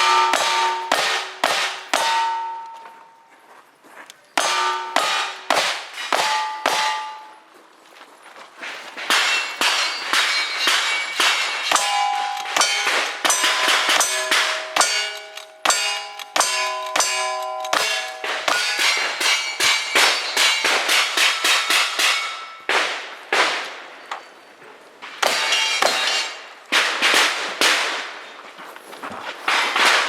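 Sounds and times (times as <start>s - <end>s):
steel plate clanging: 0.0s - 3.0s, 4.4s - 7.5s, 9.1s - 22.7s, 25.2s - 26.6s.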